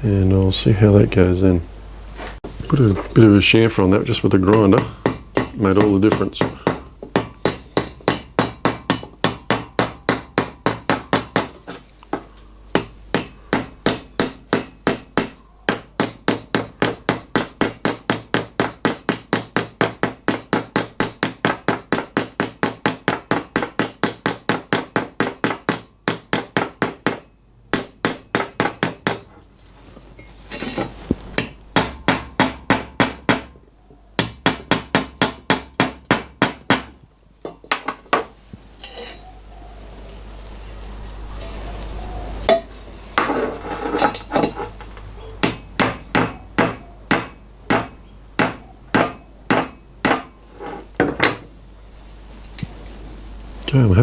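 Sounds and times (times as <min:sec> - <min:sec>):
hammer tapping on metal: 0:04.2 - 0:29.4, 0:31.4 - 0:33.6, 0:34.2 - 0:39.2, 0:45.4 - 0:50.4.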